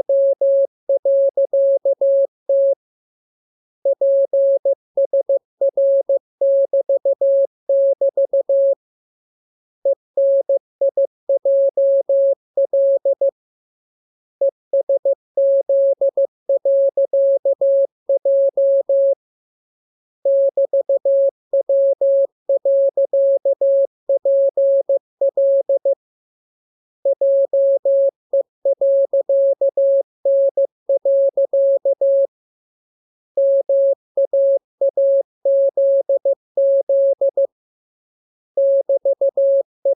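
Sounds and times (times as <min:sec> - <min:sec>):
morse code tone: 0:33.4 - 0:37.5, 0:38.6 - 0:39.9.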